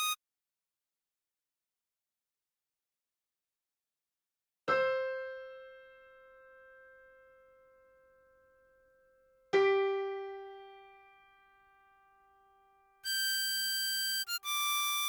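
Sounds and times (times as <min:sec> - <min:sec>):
harmonica held note: 0:13.0 - 0:15.0.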